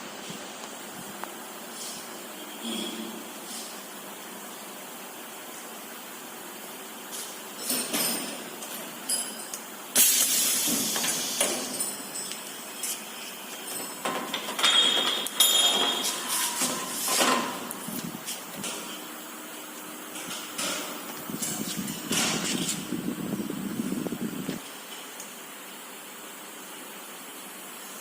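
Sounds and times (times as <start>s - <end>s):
machine hiss and hum: 0.0s - 28.0s
compressed air hissing: 10.0s - 11.8s.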